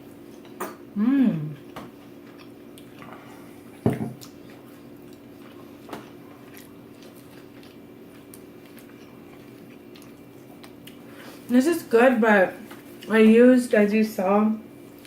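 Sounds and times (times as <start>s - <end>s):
person chewing pizza: 0.0s - 11.5s
steady low hum: 0.0s - 15.0s.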